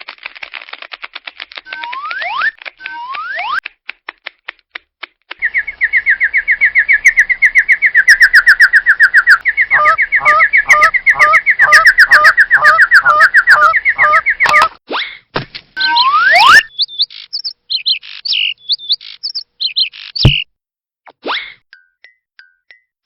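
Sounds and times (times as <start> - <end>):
lower bird chirping: 5.4 - 14.6, 15.8 - 20.5
high bird chirps: 5.4 - 14.8, 15.8 - 20.5.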